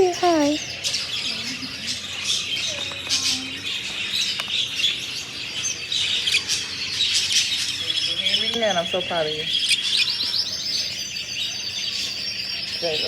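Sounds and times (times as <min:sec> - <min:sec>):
caged birds chirping: 0:00.0 - 0:13.0.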